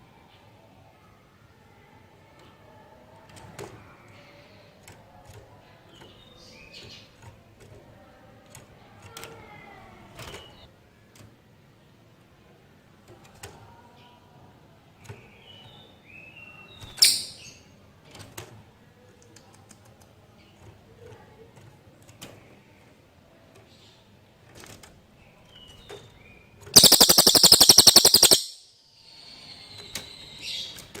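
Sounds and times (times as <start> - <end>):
bird chirping: 16.8 - 17.6, 26.8 - 28.7
rapid rattling bird trill: 17.0 - 17.5, 26.8 - 28.7.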